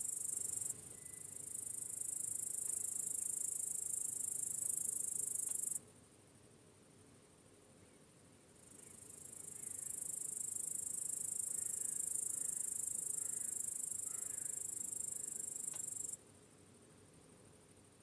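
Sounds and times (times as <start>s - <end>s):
crickets trilling: 0.0s - 5.8s, 8.6s - 16.2s.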